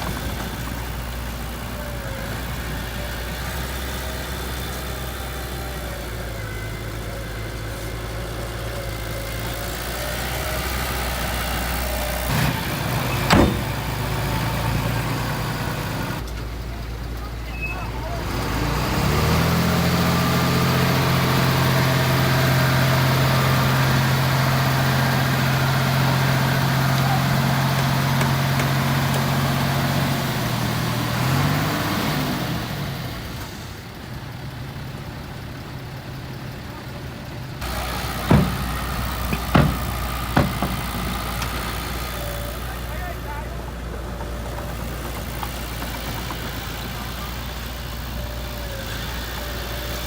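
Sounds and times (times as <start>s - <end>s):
heavy diesel engine running: 0.0s - 50.0s
sharp knocks: 13.2s - 13.9s, 37.6s - 41.6s.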